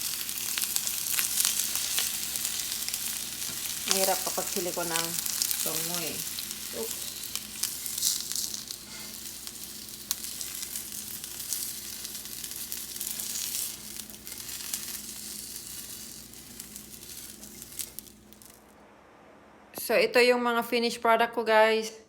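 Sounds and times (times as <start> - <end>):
fish sizzling in a pan: 0.0 - 18.8
faint low hum: 16.4 - 22.0.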